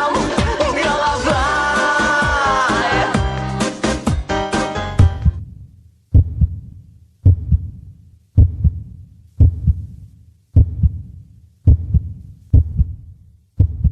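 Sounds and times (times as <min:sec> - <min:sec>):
heartbeat double thumps: 0:05.0 - 0:05.5, 0:06.1 - 0:10.0, 0:10.6 - 0:13.9.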